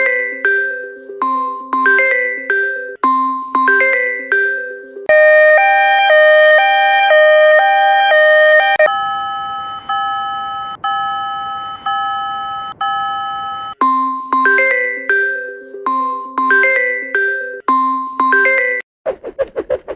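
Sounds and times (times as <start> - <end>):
level-crossing bell ringing: 0.0 - 5.2, 8.9 - 18.8.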